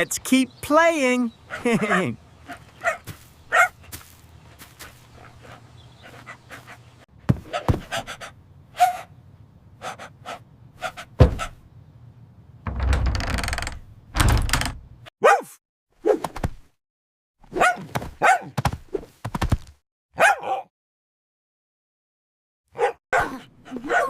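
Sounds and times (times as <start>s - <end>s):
dog bark: 1.5s - 3.9s, 8.8s - 9.1s, 15.2s - 15.6s, 17.5s - 18.6s, 20.2s - 20.7s, 22.7s - 24.0s
dog panting: 4.8s - 7.0s
hard thuds: 11.2s - 11.6s.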